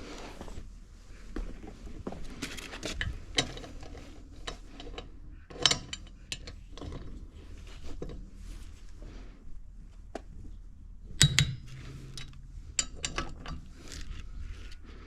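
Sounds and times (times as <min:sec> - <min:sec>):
metallic clatter of wrenches: 0:02.5 - 0:08.2, 0:11.2 - 0:14.8.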